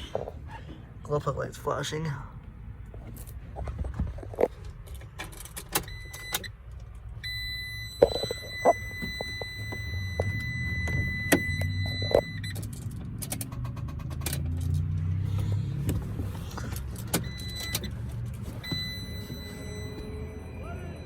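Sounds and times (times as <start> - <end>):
high electronic tone: 18.6 - 21.0.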